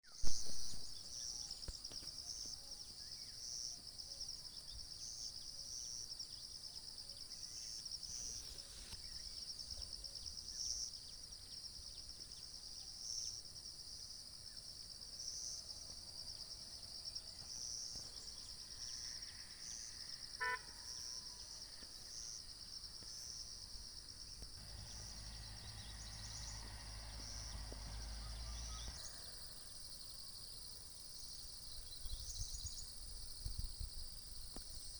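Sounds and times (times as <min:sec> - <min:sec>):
insects buzzing: 0:17.6 - 0:32.7
low rumble: 0:24.6 - 0:29.4.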